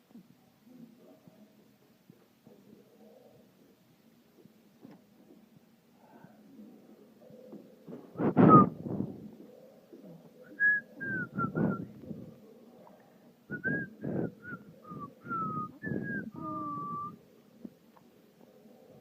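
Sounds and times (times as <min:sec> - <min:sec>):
man whistling: 0:08.2 - 0:08.8, 0:10.5 - 0:11.9, 0:13.5 - 0:17.2.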